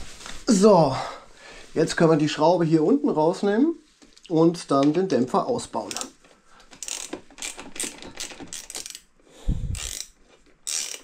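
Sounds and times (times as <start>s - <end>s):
ratchet wrench clicking: 5.9s - 6.2s, 6.8s - 9.1s, 9.7s - 11.0s.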